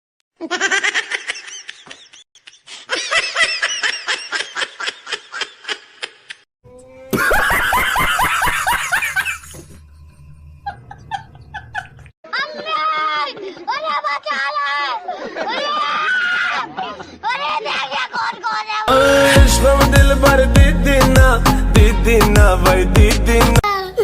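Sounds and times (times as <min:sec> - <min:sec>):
sound-effect laughs: 0:07.0 - 0:09.6, 0:10.6 - 0:13.8.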